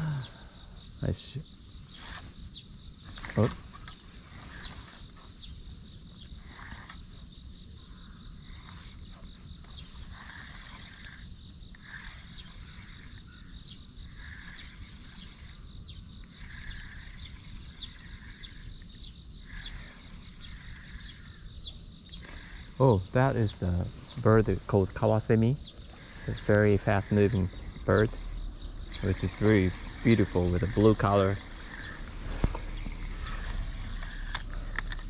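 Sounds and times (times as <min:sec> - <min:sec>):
insects chirping: 0:00.0 - 0:35.0
low background rumble: 0:03.6 - 0:35.0
short bird calls: 0:07.8 - 0:34.8.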